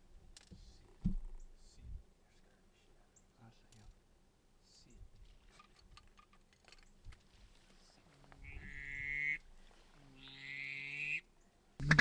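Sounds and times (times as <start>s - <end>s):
buzzy duck call: 8.5s - 9.4s, 11.8s - 12.0s.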